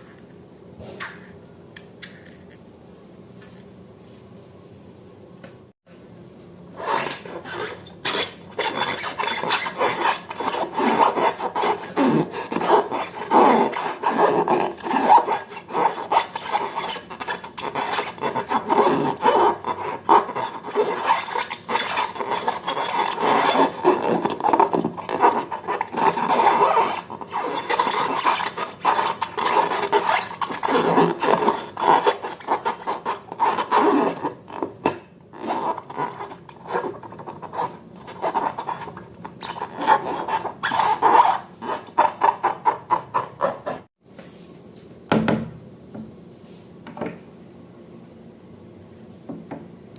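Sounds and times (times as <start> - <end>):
irregular rubbing and scraping: 6.8 - 34.7, 35.4 - 44.4.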